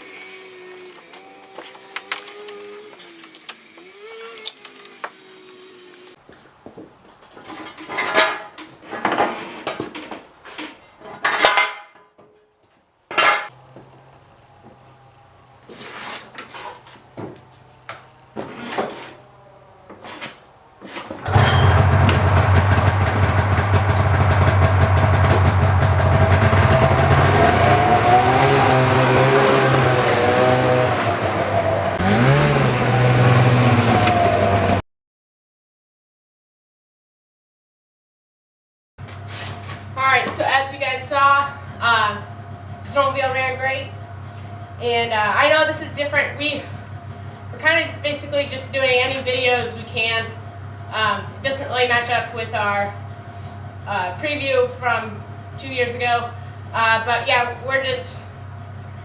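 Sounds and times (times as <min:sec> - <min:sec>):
snowmobile engine revving: 0:00.0 - 0:06.2, 0:21.2 - 0:34.8
hand tools clinking on metal: 0:00.8 - 0:06.1, 0:21.3 - 0:21.8.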